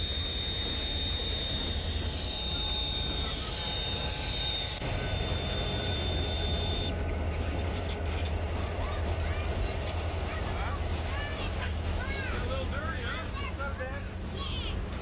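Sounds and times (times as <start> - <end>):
high-pitched squeal: 0.0 - 6.9
steam train rumble: 0.0 - 15.0.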